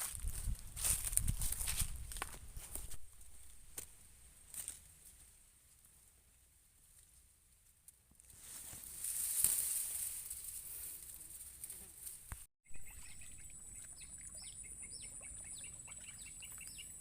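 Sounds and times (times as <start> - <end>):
small bird chirping: 12.7 - 17.0.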